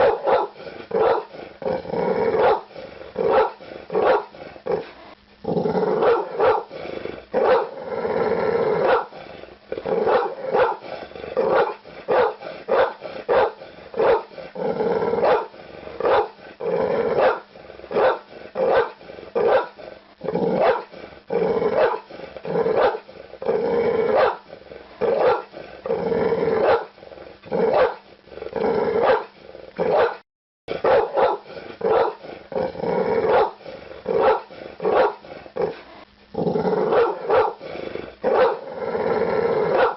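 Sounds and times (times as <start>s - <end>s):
dog barking aggressively: 0.0s - 1.4s, 2.4s - 4.8s, 6.0s - 6.8s, 7.4s - 7.8s, 8.8s - 9.2s, 9.8s - 14.4s, 15.2s - 16.4s, 17.2s - 19.8s, 20.6s - 21.0s, 21.7s - 23.1s, 24.1s - 25.6s, 26.6s - 26.9s, 27.5s - 28.0s, 29.0s - 32.3s, 33.2s - 35.3s, 36.8s - 38.7s, 39.6s - 39.9s.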